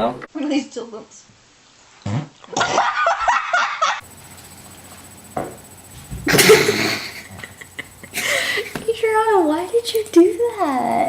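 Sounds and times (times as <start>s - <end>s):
loud rough fart: 2.0s - 2.8s, 6.1s - 7.6s
laughter: 2.5s - 4.0s, 6.2s - 8.8s.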